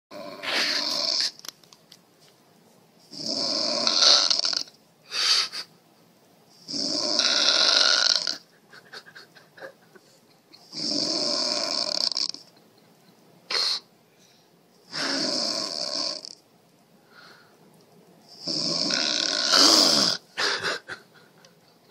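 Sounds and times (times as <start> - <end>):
woman snoring: 0.1 - 1.4, 3.1 - 4.7, 6.6 - 8.4, 10.7 - 12.4, 14.9 - 16.4, 18.3 - 20.6.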